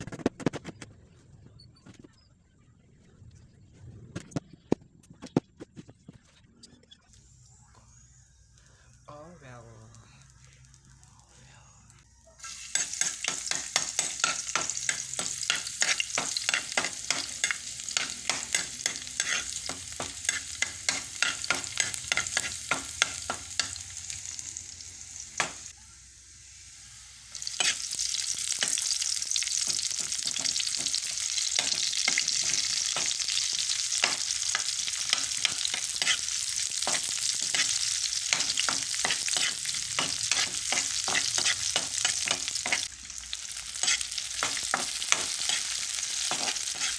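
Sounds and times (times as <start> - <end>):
food sizzling in a frying pan: 12.4 - 46.9
spatula scraping a pan: 12.7 - 23.8, 27.4 - 42.9, 43.6 - 46.9.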